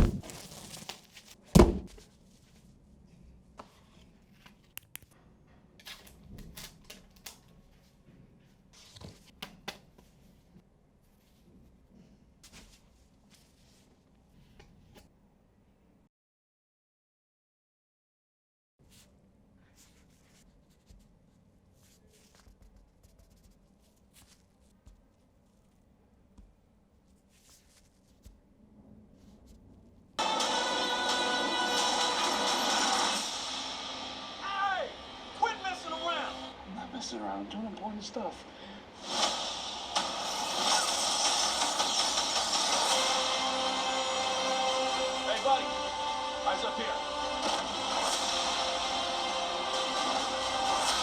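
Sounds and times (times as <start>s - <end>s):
cardboard and plastic rustling: 0.0s - 2.7s.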